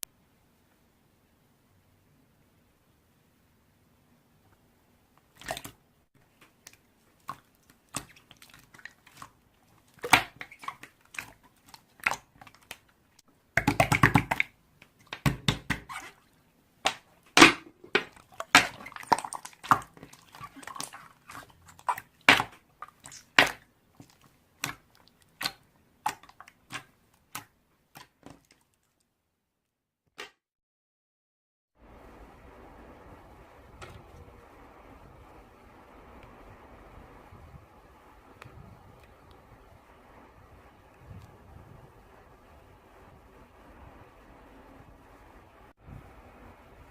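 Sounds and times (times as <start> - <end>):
slime squishing with sticky pops: 5.2 - 13.0, 13.6 - 28.8.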